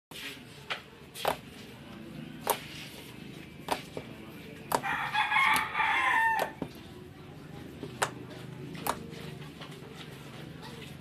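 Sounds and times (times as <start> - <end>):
rooster crowing: 4.8 - 6.6.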